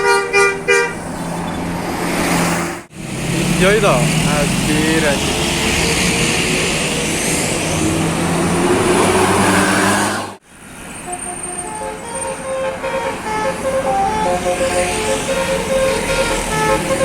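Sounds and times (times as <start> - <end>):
bus musical horn tune: 0.0 - 1.0, 11.0 - 17.0
road vehicle noise: 0.0 - 17.0.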